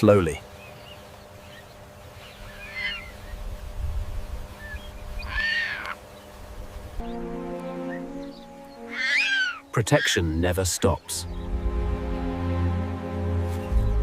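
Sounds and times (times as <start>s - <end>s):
bird calling: 0.5s - 3.5s, 4.4s - 6.4s, 7.0s - 11.6s
low rumble: 11.2s - 13.0s.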